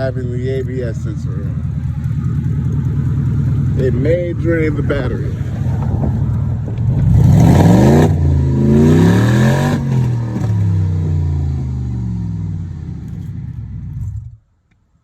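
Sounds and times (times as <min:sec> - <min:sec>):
car engine revving loudly: 0:03.4 - 0:14.4.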